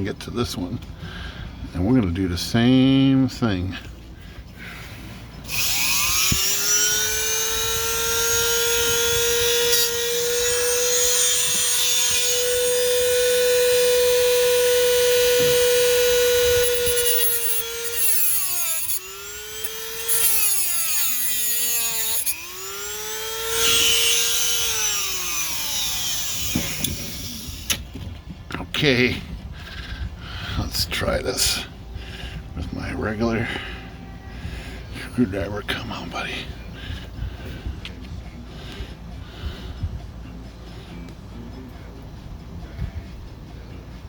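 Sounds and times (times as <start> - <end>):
rotary tool cutting whine: 5.4 - 28.0.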